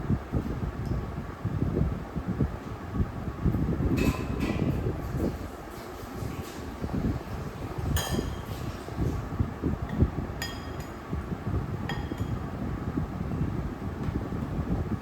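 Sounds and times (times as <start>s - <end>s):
steady low rumble: 6.7s - 15.0s
dishware clinking: 8.0s - 8.5s, 10.4s - 11.0s.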